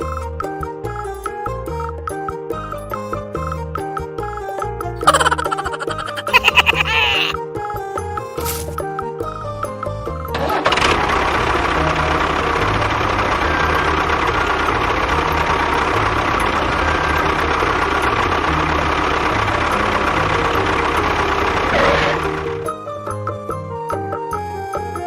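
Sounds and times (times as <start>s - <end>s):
engine idling: 10.4s - 22.8s.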